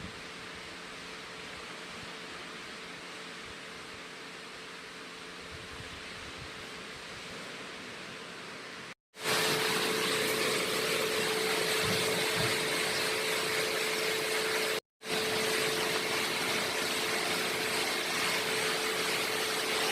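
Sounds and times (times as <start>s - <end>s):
machine motor hum: 9.2s - 19.9s.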